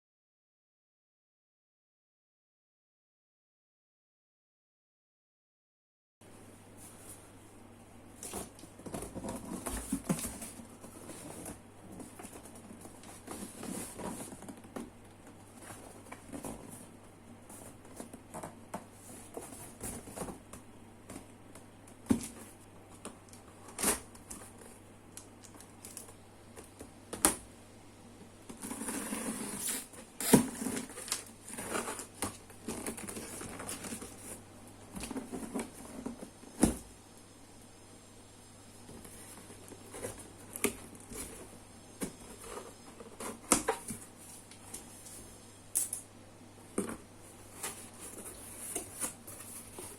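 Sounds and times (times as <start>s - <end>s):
packaging rustling and scraping: 8.2s - 20.4s, 28.5s - 36.8s, 38.9s - 45.4s, 46.8s - 49.9s.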